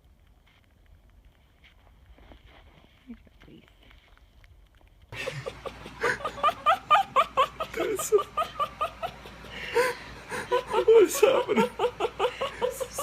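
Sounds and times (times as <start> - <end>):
person giggling and snickering: 5.2 - 13.0.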